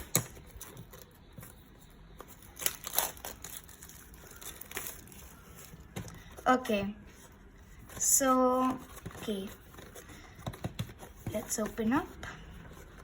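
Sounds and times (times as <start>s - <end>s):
packaging rustling and crinkling: 0.4s - 6.3s.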